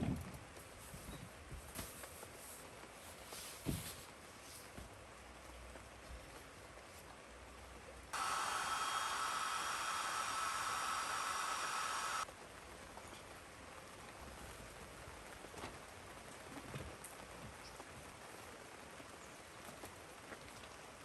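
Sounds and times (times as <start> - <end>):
louder steady hiss: 8.2 - 12.3
rain hiss: 8.2 - 12.3.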